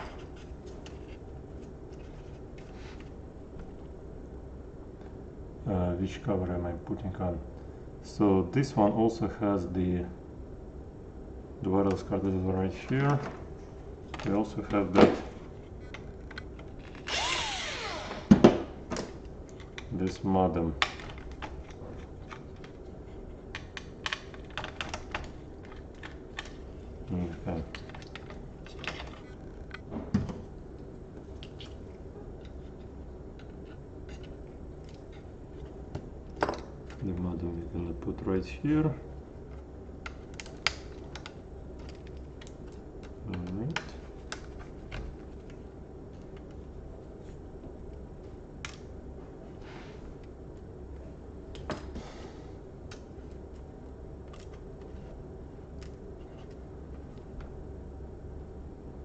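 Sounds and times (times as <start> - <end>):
steady low hum: 0.0 - 59.0.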